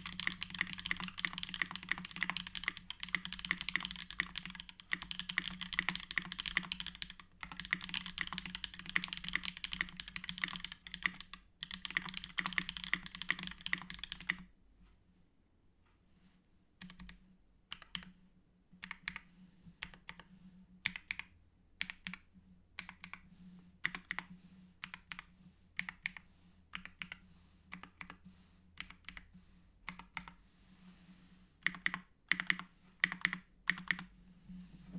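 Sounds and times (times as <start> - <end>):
mechanical keyboard typing: 0.0 - 14.4, 16.8 - 18.1, 18.8 - 19.2, 20.8 - 22.2, 22.8 - 23.2, 23.8 - 28.2, 28.8 - 29.3, 29.9 - 30.4, 31.6 - 34.1.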